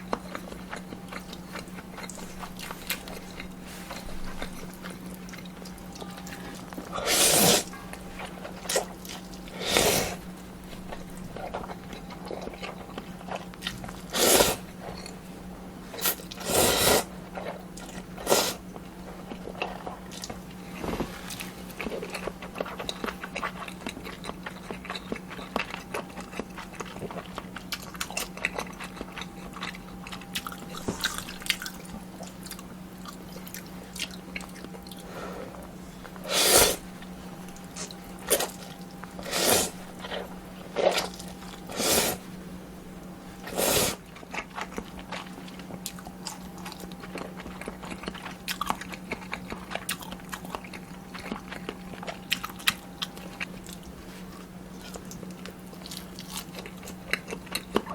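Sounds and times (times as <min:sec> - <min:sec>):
chewing with wet clicks: 0:00.0 - 0:07.0, 0:07.9 - 0:09.6, 0:10.2 - 0:14.2, 0:17.2 - 0:20.6, 0:21.4 - 0:36.2, 0:37.0 - 0:39.2, 0:39.9 - 0:41.7, 0:43.4 - 0:57.9
slurping noodles: 0:07.0 - 0:07.7, 0:09.5 - 0:10.2, 0:14.1 - 0:14.6, 0:16.0 - 0:17.1, 0:18.2 - 0:18.6, 0:36.2 - 0:36.8, 0:39.2 - 0:41.1, 0:41.7 - 0:42.2, 0:43.5 - 0:44.0.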